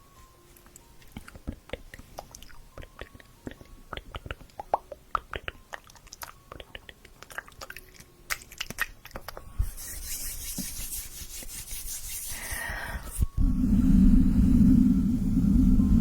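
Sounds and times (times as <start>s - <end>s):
wet tongue and lip clicks: 0.6s - 9.5s.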